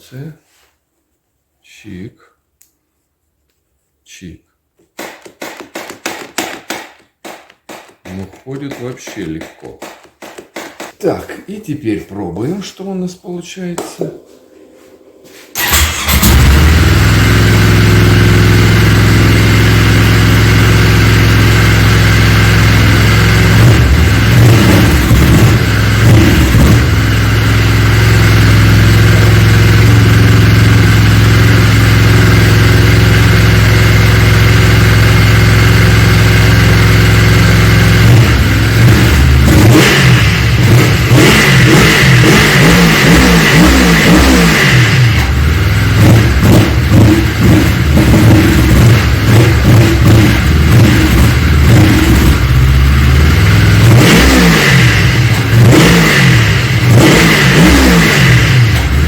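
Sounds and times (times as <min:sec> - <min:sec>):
engine throttle blips: 0:14.3 - 0:59.0.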